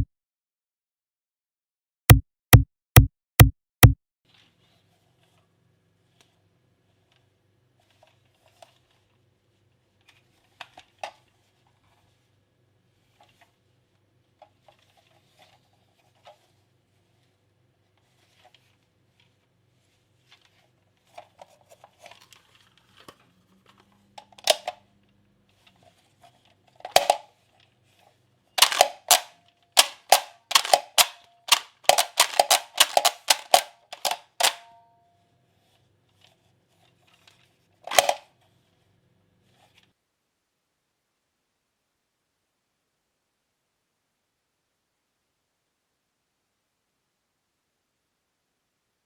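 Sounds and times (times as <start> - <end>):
plastic toy belt clicking: 28.6 - 34.7, 37.9 - 38.3.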